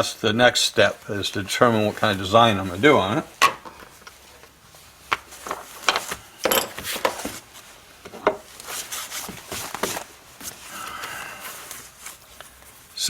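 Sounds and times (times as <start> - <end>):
tools tapping and knocking: 3.4 - 7.4, 8.0 - 8.5.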